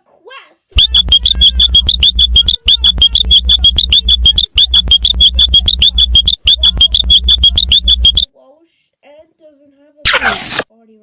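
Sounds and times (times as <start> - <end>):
distorted high chirps: 0.8 - 8.3, 10.1 - 10.6.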